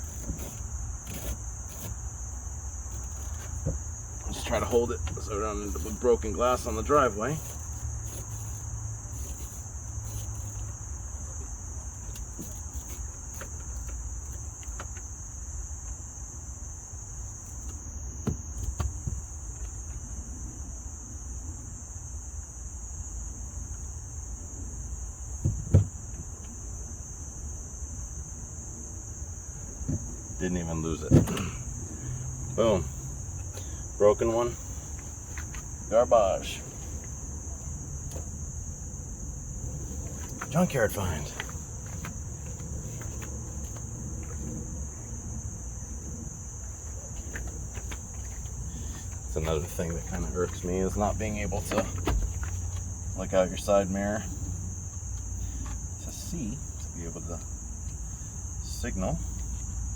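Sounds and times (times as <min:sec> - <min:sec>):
insect chirring: 0:00.0 - 0:59.9
dull knocks: 0:25.4 - 0:26.0, 0:29.8 - 0:30.3, 0:30.9 - 0:31.7.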